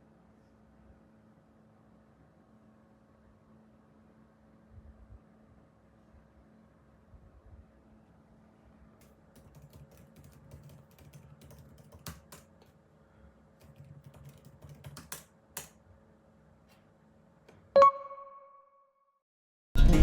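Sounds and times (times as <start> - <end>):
bright ringing chime: 17.8 - 18.6.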